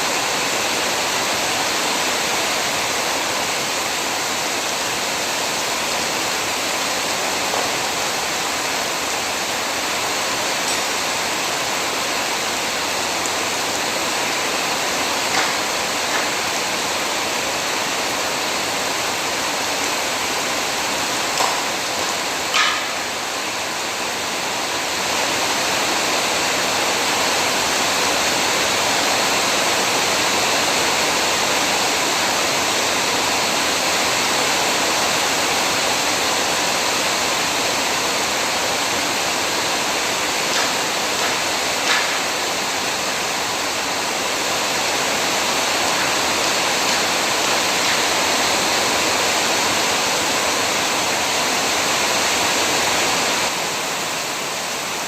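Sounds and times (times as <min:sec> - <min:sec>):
heavy rain pouring: 0:00.0 - 0:55.0.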